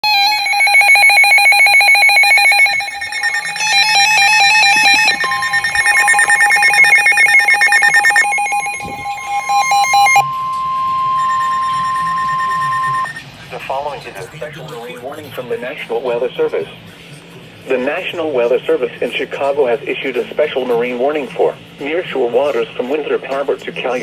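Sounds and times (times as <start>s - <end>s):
pulsing electronic alarm beeps: 0.0s - 13.2s
steady warning alarm tone: 0.0s - 13.7s.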